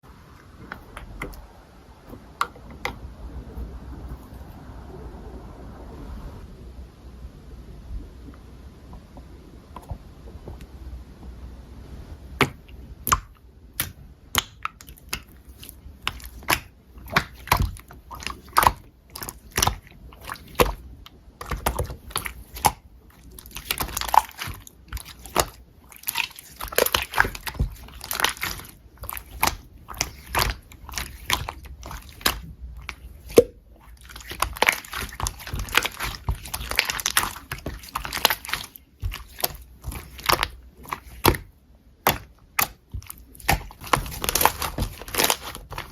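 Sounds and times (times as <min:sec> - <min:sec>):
slime squished by hand: 0:12.4 - 0:45.9
wet clicks and pops: 0:12.4 - 0:45.9.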